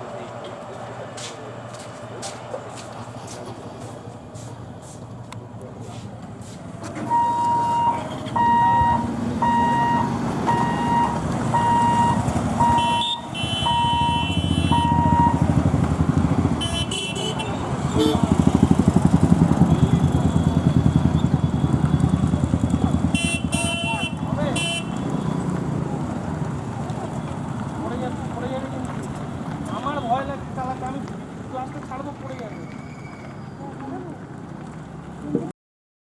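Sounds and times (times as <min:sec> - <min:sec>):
motorcycle engines pulling away: 0:00.2 - 0:35.5
horn honk: 0:07.0 - 0:15.6, 0:16.3 - 0:18.8, 0:22.9 - 0:25.4
electronic beeper: 0:07.1 - 0:15.4.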